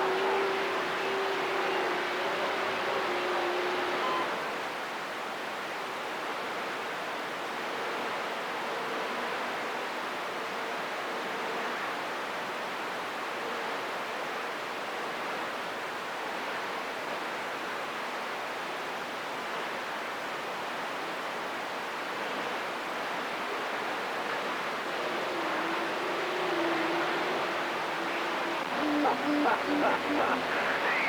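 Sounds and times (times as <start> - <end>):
radio static hiss: 24.0 - 31.0.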